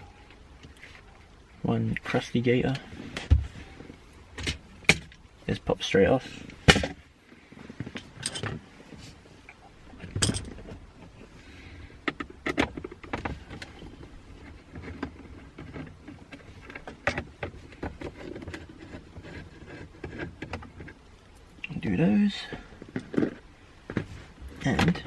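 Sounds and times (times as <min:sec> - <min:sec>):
plastic car panels clicking and knocking: 0:04.4 - 0:05.2, 0:06.6 - 0:07.0, 0:12.0 - 0:21.0.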